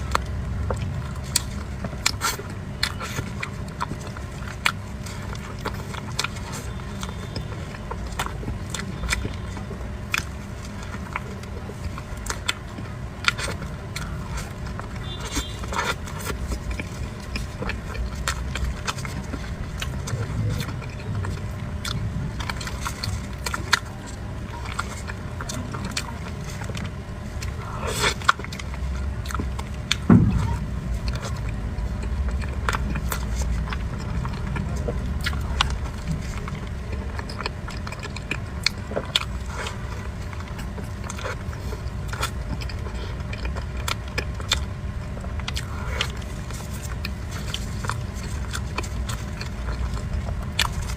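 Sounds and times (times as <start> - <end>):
low background rumble: 0.0 - 50.9
person chewing soft food: 0.0 - 50.9.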